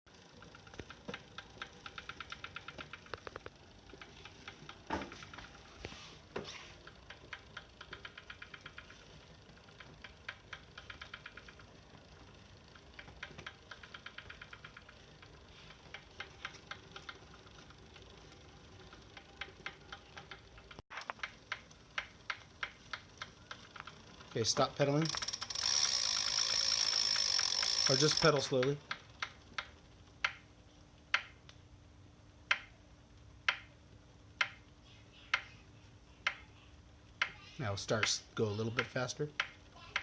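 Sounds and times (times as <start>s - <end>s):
trainer rapid mechanical clicking: 0.2s - 5.6s, 6.8s - 30.5s, 37.2s - 40.0s.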